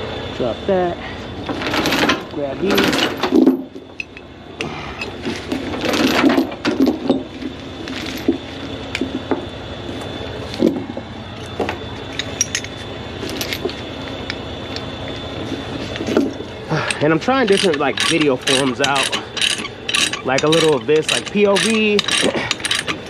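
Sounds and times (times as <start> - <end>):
chains clinking and rattling: 11.4 - 13.7, 16.8 - 23.0
metal clanks: 16.0 - 23.0.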